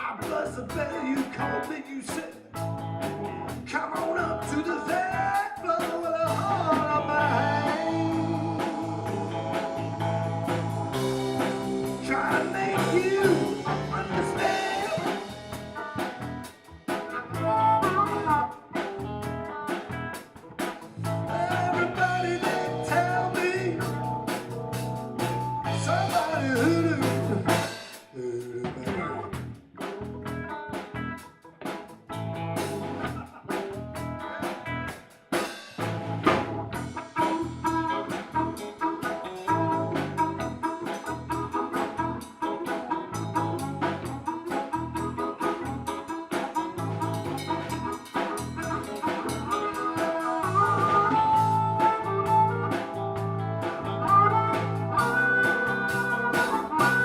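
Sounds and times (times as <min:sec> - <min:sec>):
blues guitar: 0:00.0 - 0:57.0
drum kit: 0:00.0 - 0:57.0.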